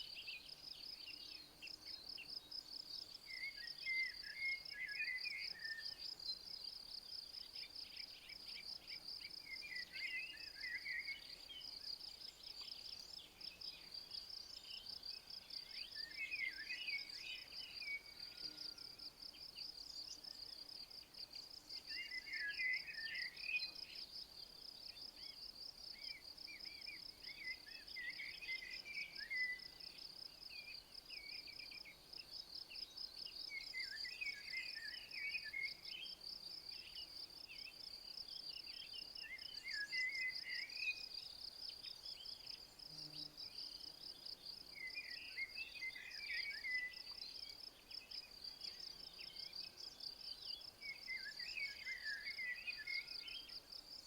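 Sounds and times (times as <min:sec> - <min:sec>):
cricket chirping: 0:00.0 - 0:54.0.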